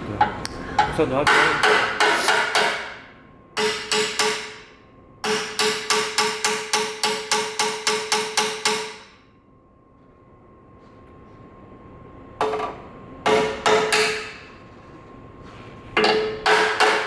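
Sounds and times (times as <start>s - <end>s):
hammer beating metal: 0.8s - 3.0s, 3.6s - 9.2s, 13.3s - 14.4s, 16.0s - 17.0s.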